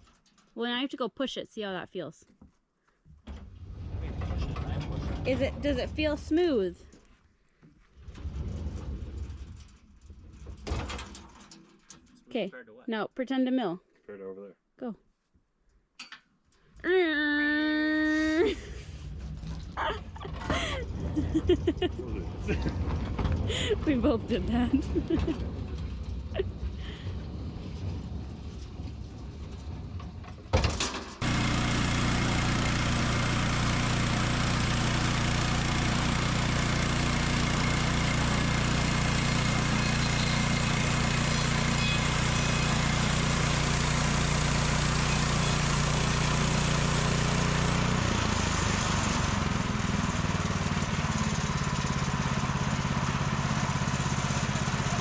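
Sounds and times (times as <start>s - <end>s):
small gasoline engine running: 18.0s - 27.6s, 31.2s - 55.0s.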